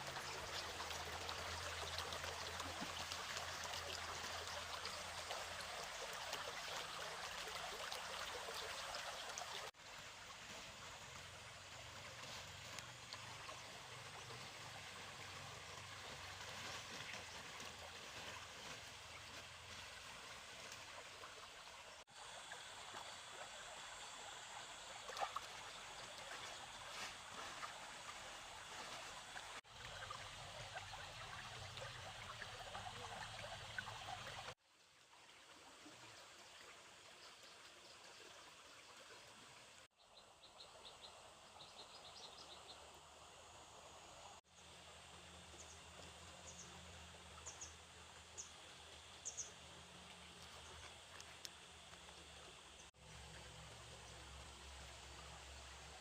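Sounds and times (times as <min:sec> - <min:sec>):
shallow water trickling: 0:00.0 - 0:43.3.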